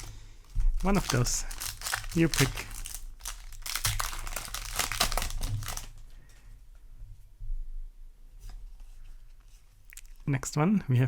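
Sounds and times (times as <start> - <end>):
foil wrapper crinkling and tearing: 0.0 - 6.2.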